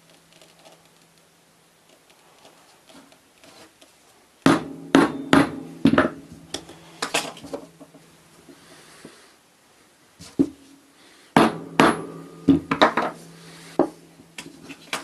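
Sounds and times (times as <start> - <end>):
sharp hammer-like knocks: 4.5 - 6.2, 11.4 - 13.1.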